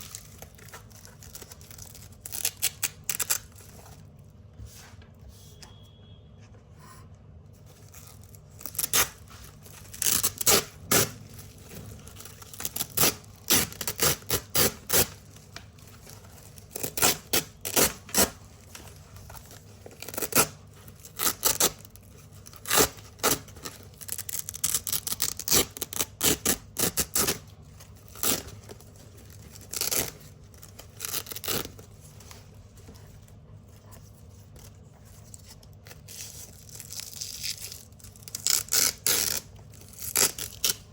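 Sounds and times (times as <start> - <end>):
velcro strips ripping: 0.0 - 3.7, 7.9 - 27.5, 28.1 - 31.9, 36.1 - 40.9.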